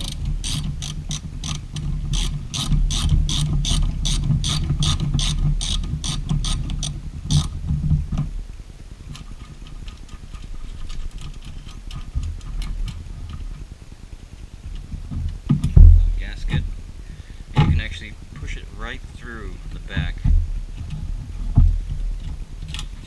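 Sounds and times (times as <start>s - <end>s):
socket ratchet clicking: 0.0s - 1.6s, 2.2s - 6.7s
handling noise: 0.0s - 23.0s.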